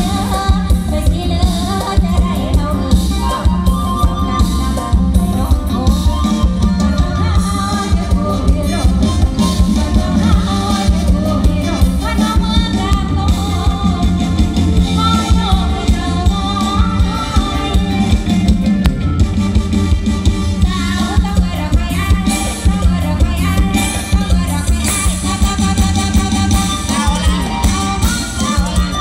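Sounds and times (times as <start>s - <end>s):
live band music: 0.0s - 29.0s
steady drum beat: 0.0s - 29.0s
wavering melody line: 0.1s - 29.0s.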